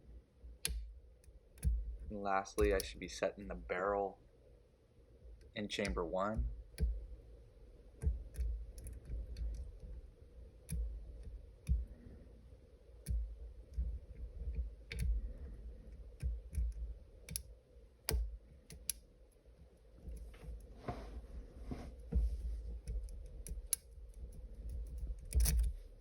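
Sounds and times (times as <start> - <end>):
lock picks clicking and tapping: 2.6 - 2.9, 13.0 - 15.3, 15.9 - 19.1, 22.8 - 25.8.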